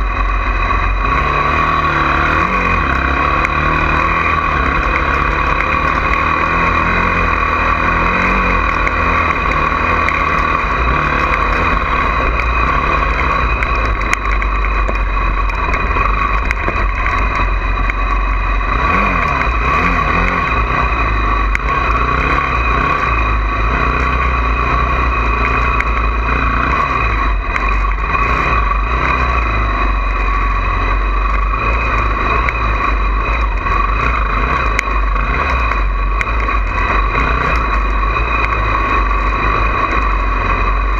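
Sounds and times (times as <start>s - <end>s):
dirt bike engine revving: 0.0s - 40.9s
steady low rumble: 0.0s - 40.9s.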